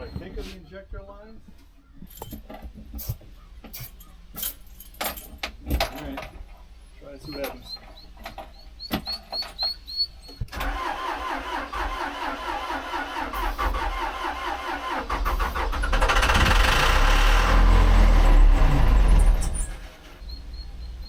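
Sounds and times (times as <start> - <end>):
diesel engine cranking: 10.5 - 21.0.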